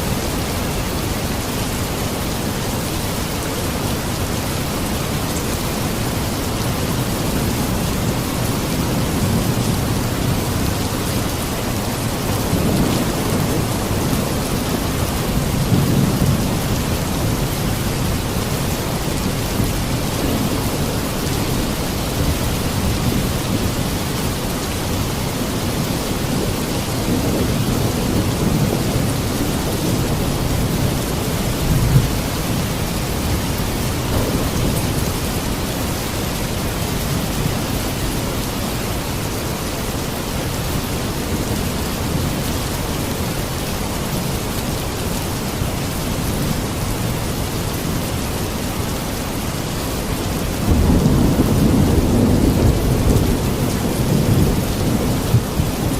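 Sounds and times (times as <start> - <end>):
steady rain: 0.0 - 55.9
thunder rumbles: 3.2 - 39.6, 50.1 - 55.9.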